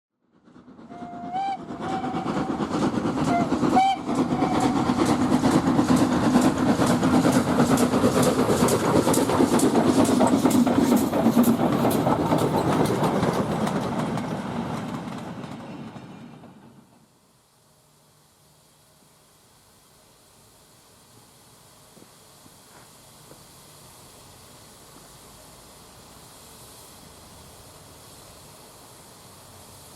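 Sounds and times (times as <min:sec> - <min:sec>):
steam locomotive exhaust beats: 0:00.4 - 0:29.9
steam locomotive whistle: 0:00.9 - 0:02.6, 0:03.2 - 0:04.9.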